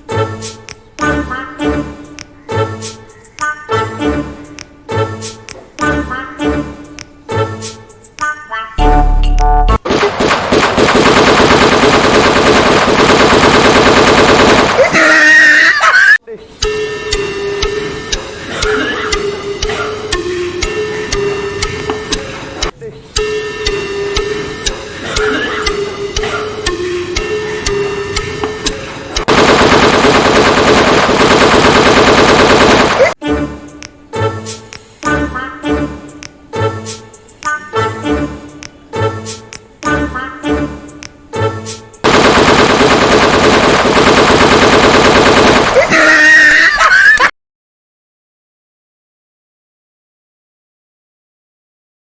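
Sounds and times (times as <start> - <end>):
jingling music: 0.0 - 9.8, 33.2 - 42.1
music with ticking beat: 0.0 - 9.8, 16.6 - 45.6
machine-gun fire: 9.8 - 14.9, 29.3 - 33.1, 42.0 - 45.9
rapid automatic gunfire: 9.9 - 14.9, 29.3 - 33.1, 42.0 - 45.9.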